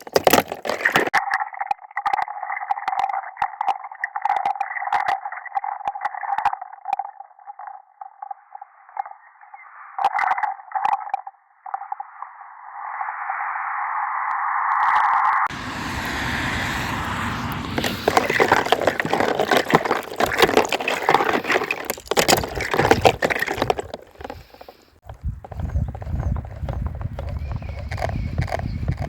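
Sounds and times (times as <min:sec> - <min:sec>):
water splashing and bubbling: 0:14.7 - 0:24.0.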